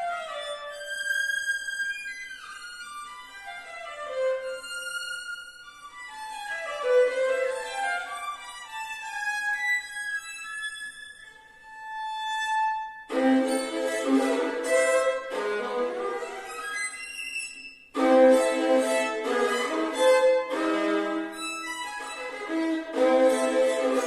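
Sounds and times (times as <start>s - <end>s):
solo violin playing scale runs: 11.6s - 24.0s.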